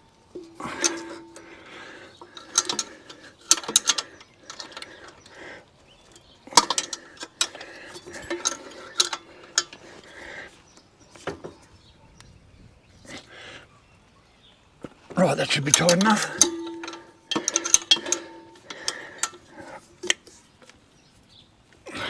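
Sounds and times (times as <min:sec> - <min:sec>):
tool clinking against metal: 0:00.4 - 0:05.3, 0:06.1 - 0:09.8, 0:15.5 - 0:20.2.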